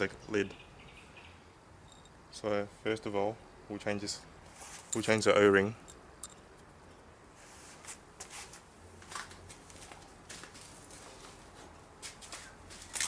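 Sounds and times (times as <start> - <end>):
small parts clicking and rustling: 5.8 - 7.0.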